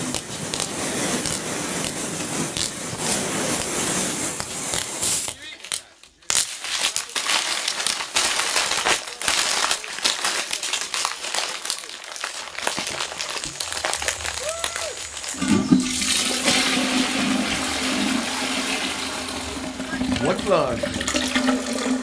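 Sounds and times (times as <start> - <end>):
dense crackling and clicking: 0.0 - 16.8, 17.4 - 22.0
toilet water rushing: 14.1 - 22.0.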